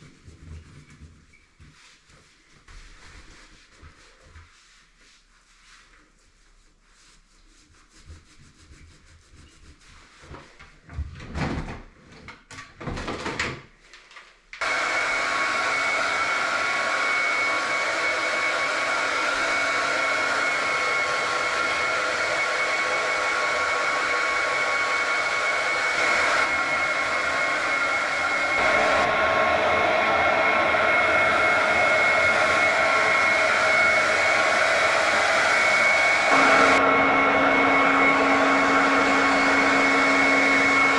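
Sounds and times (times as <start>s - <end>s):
rubbing and rustling: 0.0s - 11.3s
hair dryer whining: 14.6s - 40.9s.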